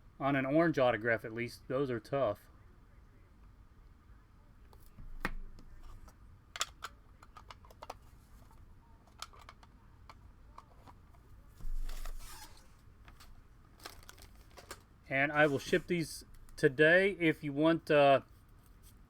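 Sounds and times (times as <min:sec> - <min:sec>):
card rustling: 0:10.5 - 0:16.6.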